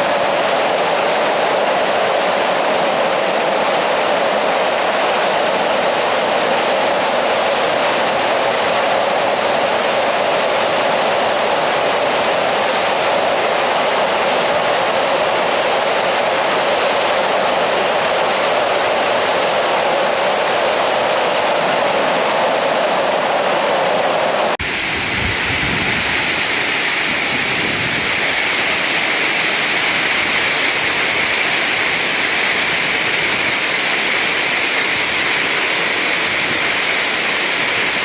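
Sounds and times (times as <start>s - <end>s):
water falling in a cave: 24.6s - 38.0s.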